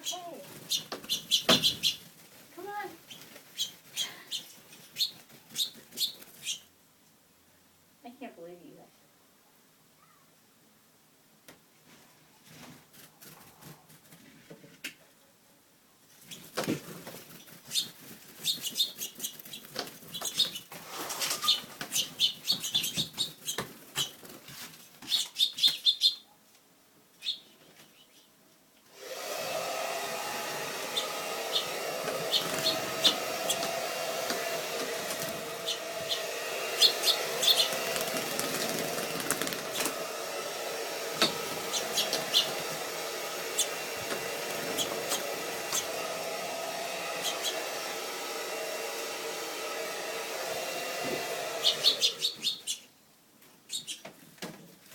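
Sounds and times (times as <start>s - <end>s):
finches chirping: 0.0s - 2.0s, 3.1s - 6.7s, 17.7s - 20.7s, 21.3s - 24.2s, 25.0s - 26.3s, 30.9s - 31.7s, 32.3s - 33.7s, 35.6s - 38.7s, 41.6s - 42.6s, 43.5s - 43.8s, 44.6s - 45.9s, 47.2s - 47.6s, 51.6s - 52.9s, 53.7s - 54.0s
wings fluttering: 0.0s - 6.7s, 16.2s - 26.0s, 29.1s - 48.3s, 50.6s - 52.8s.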